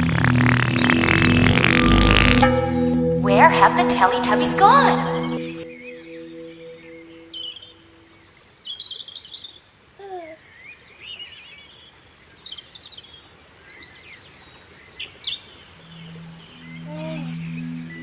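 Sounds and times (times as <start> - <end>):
small birds chirping: 5.2 - 18.0.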